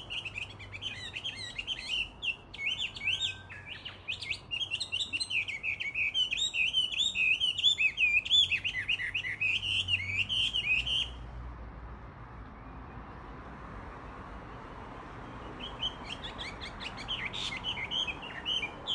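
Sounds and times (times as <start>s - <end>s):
bird singing whistled phrases: 0.0s - 11.2s, 15.6s - 18.9s.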